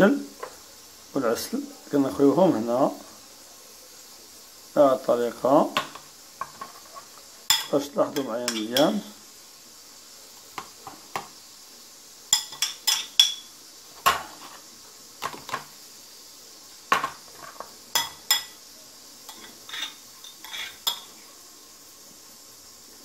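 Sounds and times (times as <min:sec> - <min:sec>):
utensil scraping metal strainer: 0:19.3 - 0:21.0.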